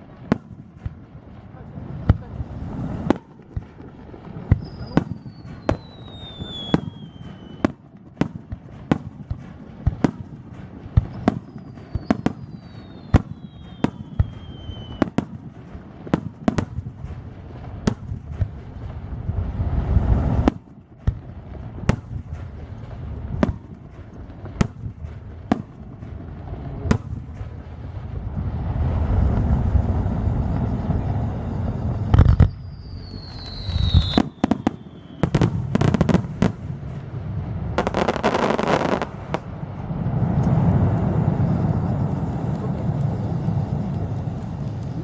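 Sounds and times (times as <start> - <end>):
low rumble: 1.0 - 5.0, 16.9 - 20.5, 21.3 - 34.2, 39.0 - 45.0
falling firework whistles: 1.8 - 25.8, 26.9 - 37.0, 37.7 - 45.0
firework shell bursts: 28.8 - 36.2, 40.2 - 45.0.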